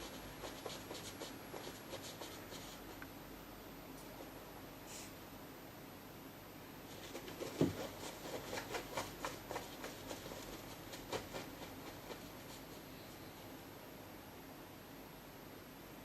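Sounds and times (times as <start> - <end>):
thump: 7.6 - 7.8.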